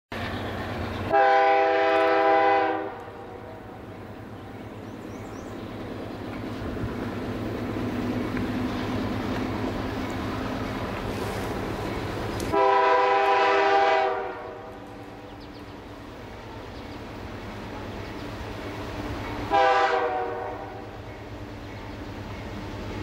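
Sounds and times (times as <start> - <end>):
locomotives rumbling: 0.1 - 23.0
train air horn blast: 1.1 - 3.5, 12.5 - 14.9, 19.5 - 20.9.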